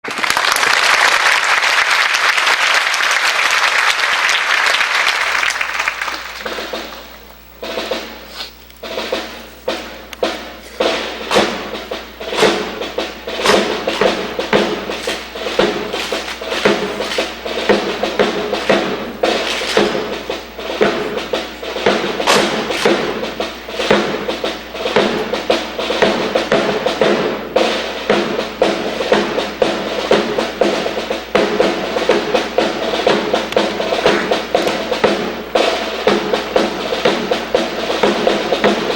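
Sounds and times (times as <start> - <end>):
audience applauding: 0.0 - 7.4
drums beating marching rhythm: 3.0 - 38.9
band music: 5.0 - 38.9.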